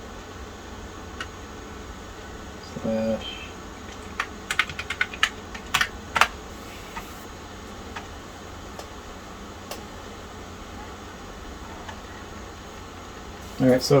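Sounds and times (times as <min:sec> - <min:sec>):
steady low hum: 0:00.0 - 0:14.0
keyboard keystrokes: 0:03.8 - 0:06.4.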